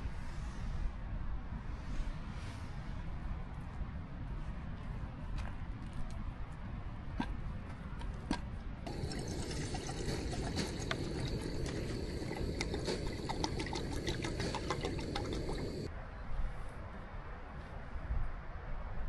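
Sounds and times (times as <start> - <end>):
water trickling and splashing: 8.9 - 15.9.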